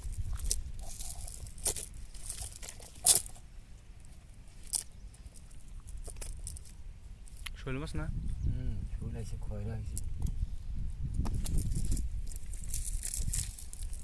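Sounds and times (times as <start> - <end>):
net crinkling and rustling: 0.0 - 3.4, 11.4 - 14.0.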